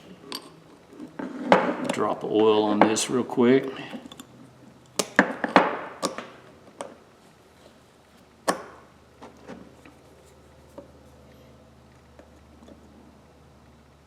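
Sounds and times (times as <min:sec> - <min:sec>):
tools knocking and clicking: 0:00.2 - 0:03.0, 0:03.8 - 0:07.0, 0:08.4 - 0:08.9.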